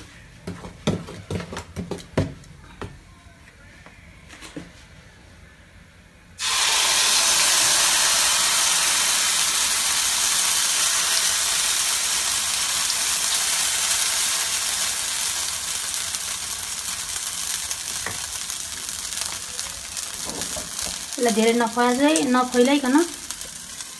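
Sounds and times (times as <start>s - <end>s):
batter sizzling in a hot pan: 6.4s - 23.9s.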